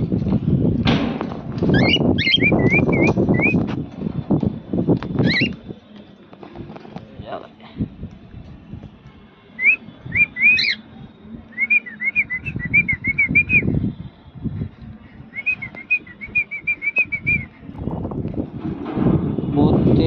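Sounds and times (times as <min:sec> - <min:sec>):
wind buffeting microphone: 0:00.0 - 0:20.0
cockatiel chirping and whistling: 0:01.7 - 0:03.6, 0:05.2 - 0:05.6, 0:09.6 - 0:10.8.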